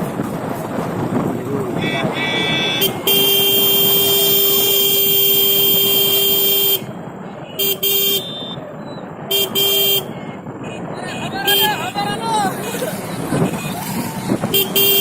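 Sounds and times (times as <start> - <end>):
steady background noise: 0.0 - 15.0
vehicle horn honking: 1.8 - 6.9, 7.6 - 8.6, 9.3 - 15.0.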